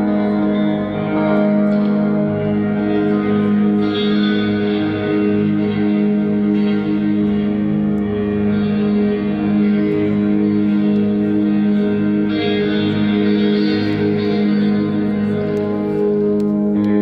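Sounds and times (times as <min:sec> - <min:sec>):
guitar with echo and reverb: 0:00.0 - 0:17.0.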